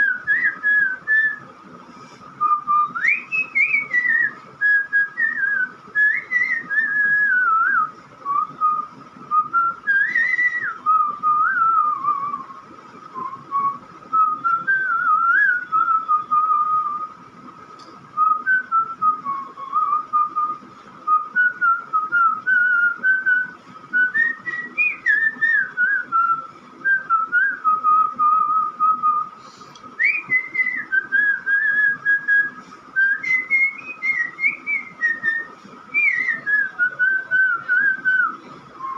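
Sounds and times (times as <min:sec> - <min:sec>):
person breathing: 0:01.8 - 0:02.4, 0:29.4 - 0:29.8
person whistling a melody: 0:02.4 - 0:12.5, 0:18.2 - 0:29.3, 0:30.0 - 0:38.9.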